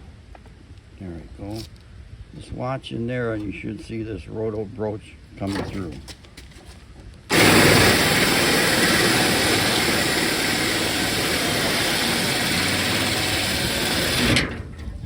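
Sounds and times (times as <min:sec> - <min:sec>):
power drill cutting metal: 0:07.3 - 0:14.6.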